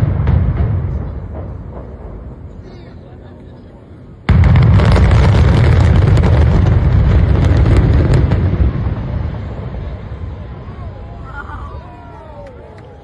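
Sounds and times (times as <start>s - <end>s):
explosion rumble with crackles: 0.0s - 12.5s.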